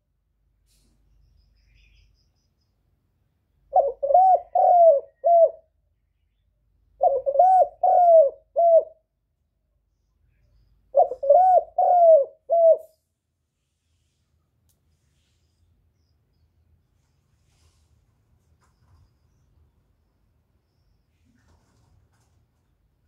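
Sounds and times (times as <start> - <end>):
dove cooing: 3.7 - 5.6, 7.0 - 9.0, 10.9 - 12.9.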